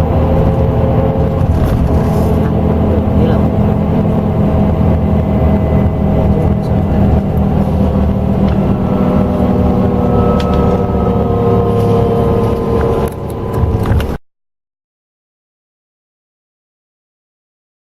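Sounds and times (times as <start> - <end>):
coach engine running: 0.0 - 14.2
multi-tone whine: 0.0 - 14.2.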